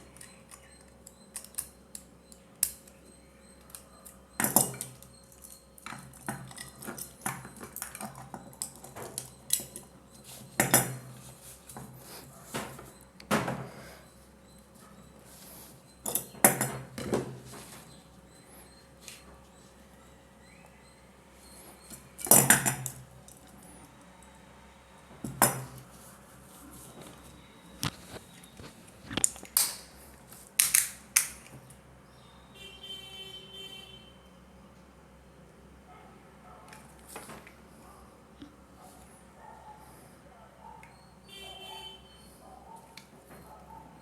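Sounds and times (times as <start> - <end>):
small parts and tool clinking: 0.0 - 11.9, 16.0 - 17.1, 21.9 - 23.6
plastic and metal parts clicking: 0.1 - 3.0.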